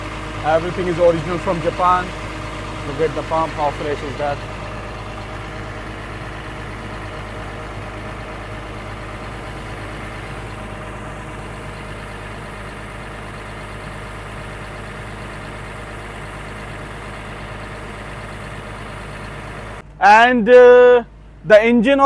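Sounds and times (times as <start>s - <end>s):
excavator diesel engine idling: 0.0s - 22.0s.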